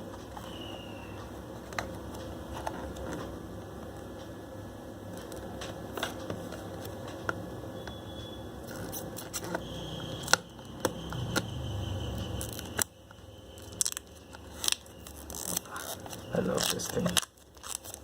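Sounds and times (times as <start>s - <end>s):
cardboard and plastic crinkling: 13.7s - 18.0s.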